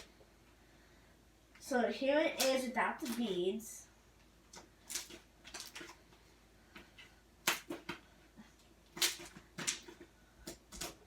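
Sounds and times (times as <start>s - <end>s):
slime squelching: 4.4s - 11.0s.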